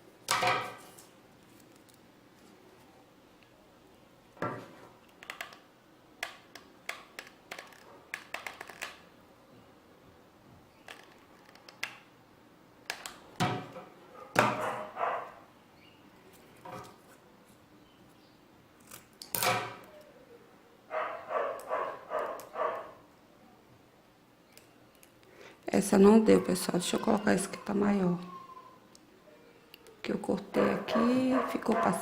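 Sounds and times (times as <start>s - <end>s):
dog barking: 14.1s - 15.4s, 20.9s - 23.0s, 30.6s - 32.0s.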